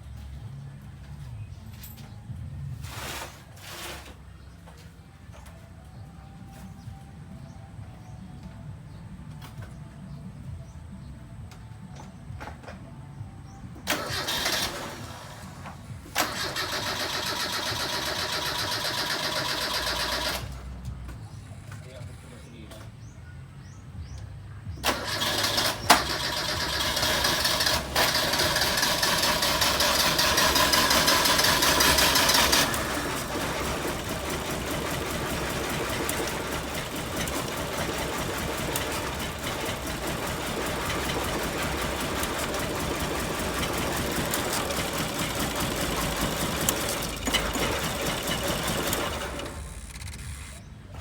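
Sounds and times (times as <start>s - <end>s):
car engine starting and running: 13.8s - 21.1s, 24.7s - 50.7s.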